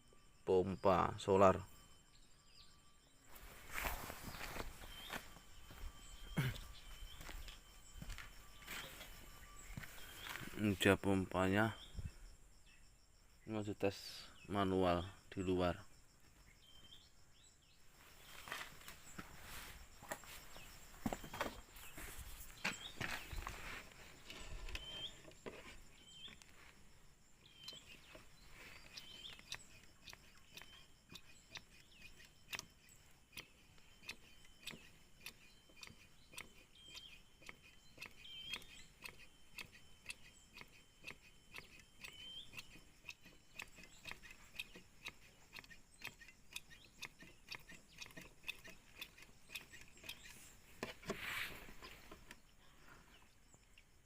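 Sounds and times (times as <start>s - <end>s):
faint clicking of pump: 27.6s - 52.5s.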